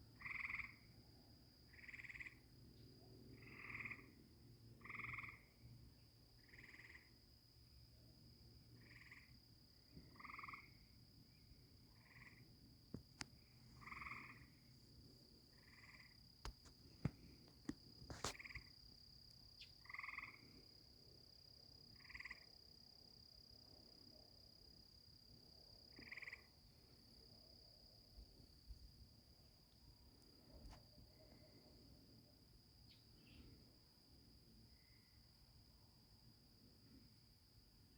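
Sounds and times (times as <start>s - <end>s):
crickets droning: 0.0s - 37.9s
tree frogs trilling: 0.2s - 1.0s, 1.7s - 2.6s, 3.3s - 5.6s, 6.4s - 7.2s, 8.8s - 9.4s, 10.1s - 11.0s, 11.9s - 12.5s, 13.3s - 14.7s, 15.5s - 17.3s, 18.1s - 18.8s, 19.6s - 20.6s, 22.0s - 22.6s, 25.9s - 26.9s.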